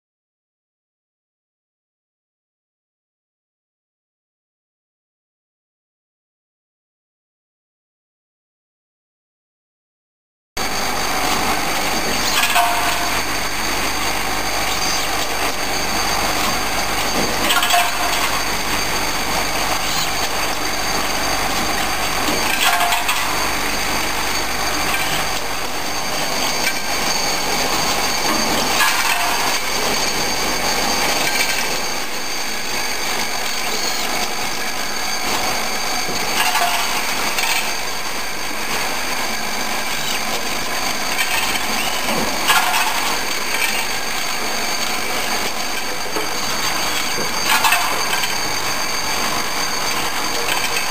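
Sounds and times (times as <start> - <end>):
machining noise with high tones: 10.6 - 50.9.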